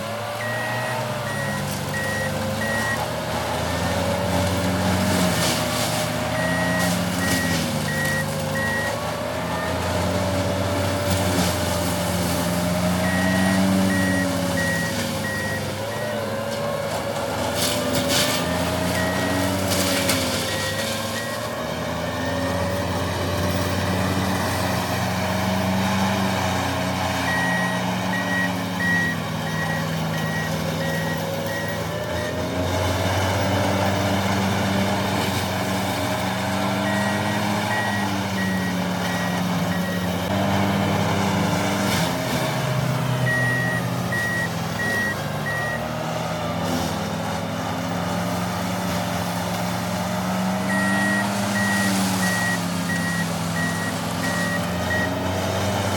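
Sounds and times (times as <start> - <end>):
diesel engine working: 0.0 - 55.9
backup alarm beeping: 0.4 - 3.1, 6.3 - 9.8, 12.9 - 16.3, 20.4 - 21.5, 27.3 - 32.4, 36.8 - 40.2, 43.2 - 45.8, 50.7 - 55.2.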